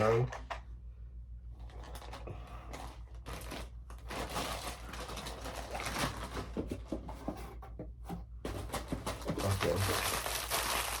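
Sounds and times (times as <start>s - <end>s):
steady low hum: 0.0s - 4.1s
plastic packaging crinkling: 1.7s - 6.6s, 9.0s - 11.0s.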